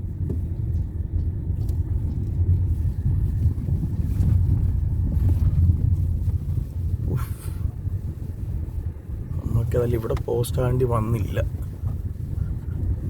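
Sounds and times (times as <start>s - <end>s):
vehicle rumbling along a road: 0.0s - 13.0s.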